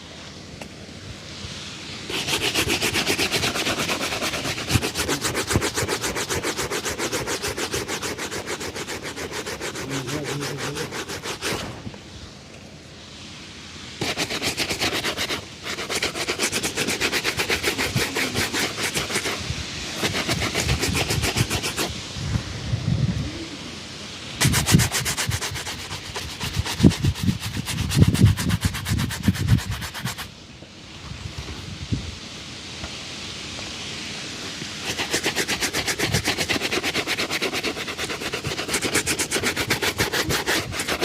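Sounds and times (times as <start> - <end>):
brush strokes on shoe: 1.7 - 12.0, 14.0 - 22.0, 24.4 - 30.3, 34.3 - 41.0.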